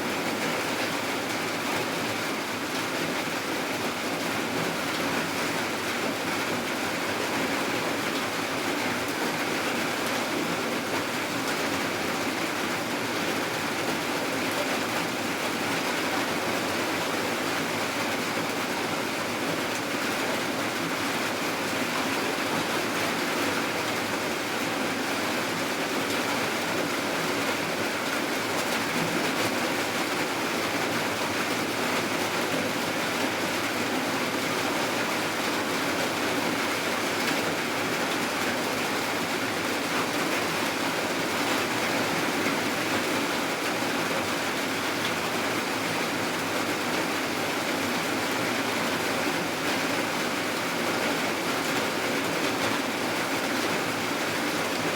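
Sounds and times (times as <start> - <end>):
steady rain: 0.0 - 54.9.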